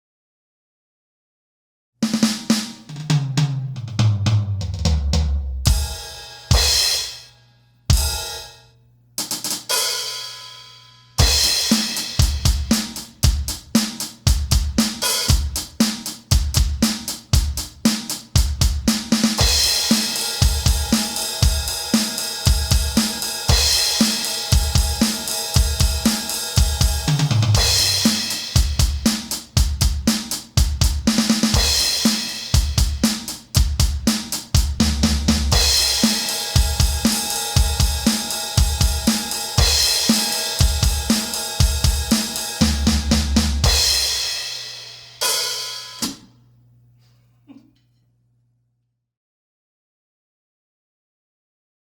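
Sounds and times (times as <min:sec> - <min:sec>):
electronic drum kit groove: 0:02.0 - 0:07.3, 0:07.9 - 0:08.6, 0:09.2 - 0:46.3
cymbal crashes: 0:05.7 - 0:08.6, 0:19.4 - 0:29.3, 0:35.5 - 0:46.2.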